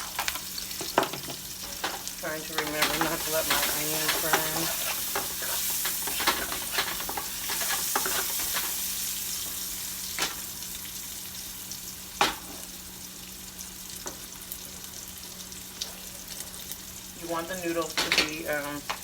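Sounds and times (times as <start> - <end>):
spoon scraping a pan: 0.0 - 8.9
onions sizzling in a frying pan: 0.0 - 19.0.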